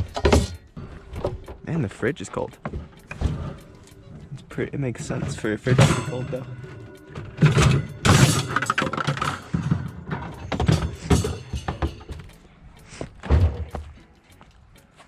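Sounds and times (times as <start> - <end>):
glass and junk clattering and breaking: 0.0 - 1.8, 2.6 - 12.4.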